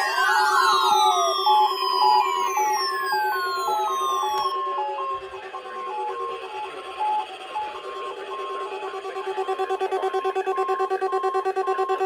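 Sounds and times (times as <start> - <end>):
beeping electronic tune: 0.0 - 4.5.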